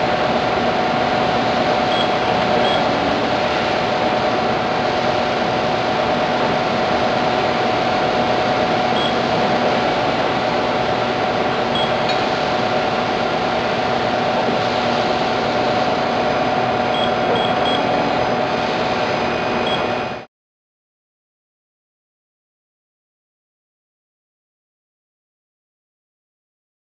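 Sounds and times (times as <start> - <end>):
machinery humming: 0.0 - 20.3
short high beeps: 1.9 - 2.9, 9.0 - 9.2, 11.8 - 12.1, 17.0 - 17.9, 19.6 - 20.0.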